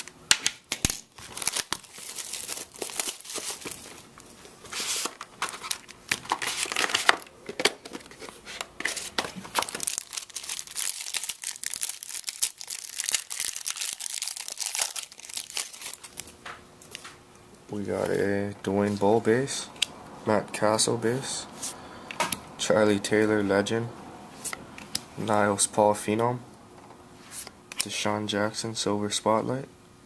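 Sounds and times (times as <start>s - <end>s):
packaging crackling and tearing: 0.7s - 7.3s, 9.0s - 16.4s.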